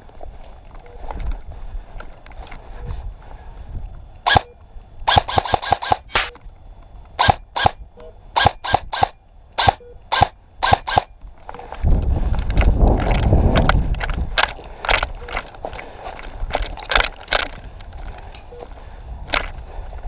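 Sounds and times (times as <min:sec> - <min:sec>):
airsoft gun shots: 0:04.3 - 0:04.5, 0:05.1 - 0:06.3, 0:07.2 - 0:07.8, 0:08.4 - 0:11.1.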